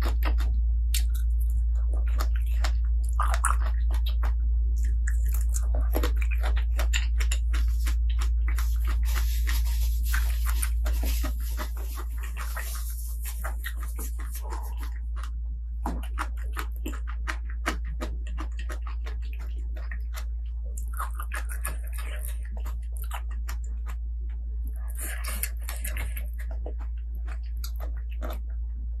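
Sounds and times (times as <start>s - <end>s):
wet mouth clicks: 0.0s - 11.0s
crunchy chewing: 0.0s - 29.0s
low electrical hum: 0.0s - 29.0s.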